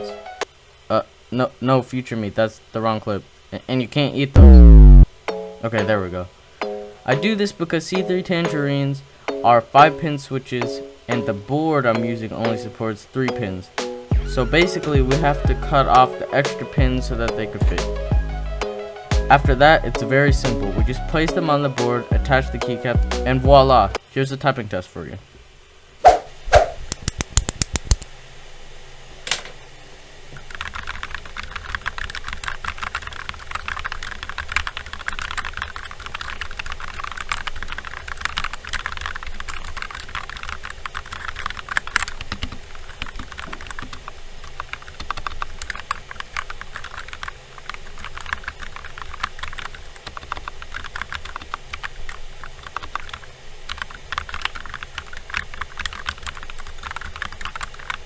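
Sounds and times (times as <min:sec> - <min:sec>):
fast typing on mechanical keyboard: 0:26.8 - 0:28.0, 0:30.4 - 0:58.0.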